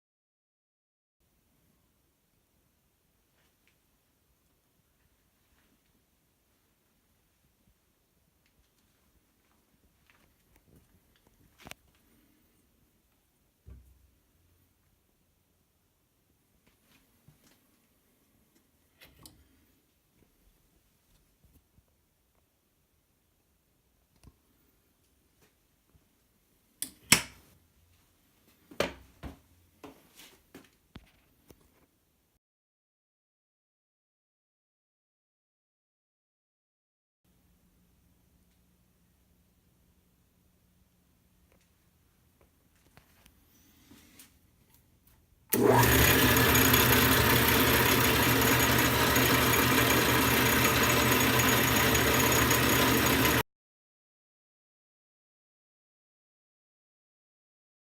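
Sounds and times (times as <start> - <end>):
metal lathe running: 45.6 - 53.4.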